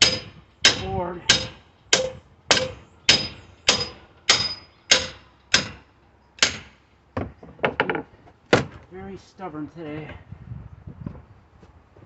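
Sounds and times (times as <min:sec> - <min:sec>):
sledgehammer striking steel bar: 0:00.0 - 0:06.8.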